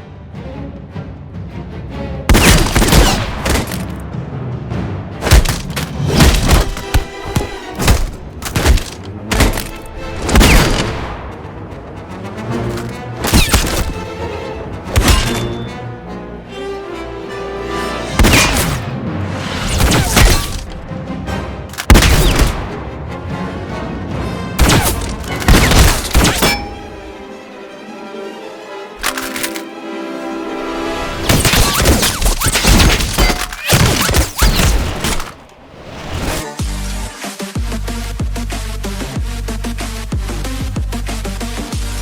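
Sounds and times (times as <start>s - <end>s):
cinematic hits and thuds: 2.3s - 4.2s, 5.2s - 11.3s, 12.8s - 14.1s, 18.2s - 20.9s, 21.8s - 22.8s, 24.6s - 26.9s, 31.2s - 35.5s
blasts and hits ringing: 24.6s - 27.0s.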